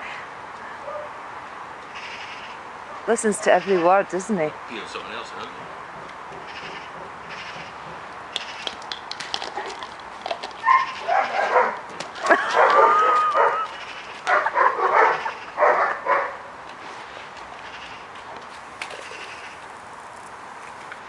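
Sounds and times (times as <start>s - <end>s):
dog barking and yowling: 10.6s - 16.4s.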